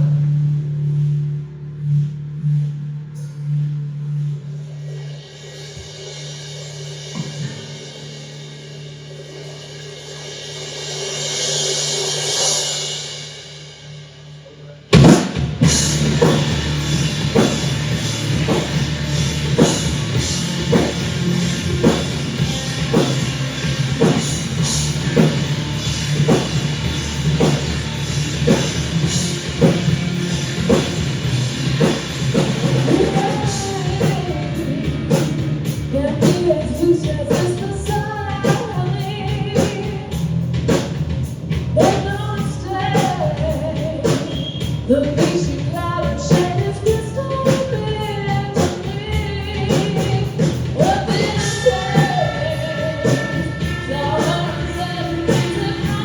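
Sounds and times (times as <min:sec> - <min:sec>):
live rock band playing: 0:15.0 - 0:42.1, 0:42.8 - 0:56.0
person singing: 0:45.0 - 0:56.0.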